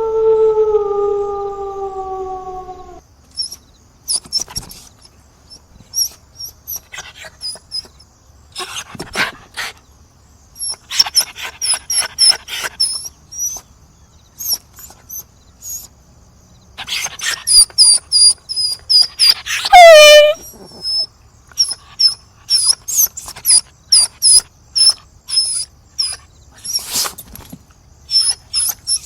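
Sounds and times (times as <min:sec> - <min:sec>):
dog howling: 0:00.0 - 0:03.0, 0:16.9 - 0:21.1
dog whimpering and yelping: 0:02.5 - 0:04.5, 0:05.5 - 0:08.0, 0:10.6 - 0:13.7, 0:14.4 - 0:15.9, 0:16.8 - 0:27.1, 0:28.1 - 0:29.0.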